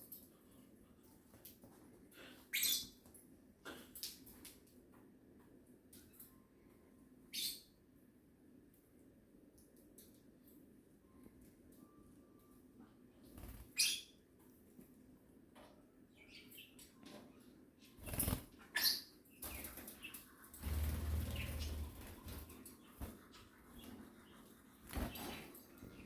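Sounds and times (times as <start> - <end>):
faint bird chirps: 2.2 - 3.0, 6.3 - 7.8, 13.4 - 14.2
bird wings fluttering: 18.0 - 18.5, 20.6 - 22.5.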